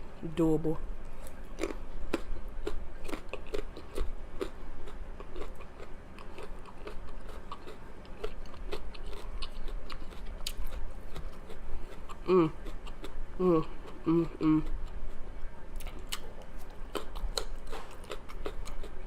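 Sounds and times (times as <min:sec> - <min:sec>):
person chewing with wet smacks: 0:01.0 - 0:19.0.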